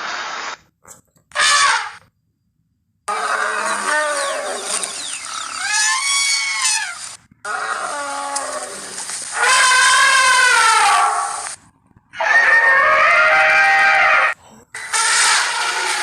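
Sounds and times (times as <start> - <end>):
mammoth calls: 3.1 - 11.4.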